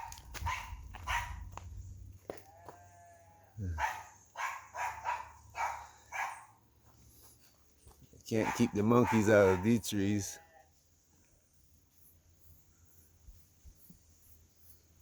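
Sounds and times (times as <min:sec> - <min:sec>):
dog barking: 0:00.0 - 0:01.4, 0:03.7 - 0:06.5, 0:08.4 - 0:09.8.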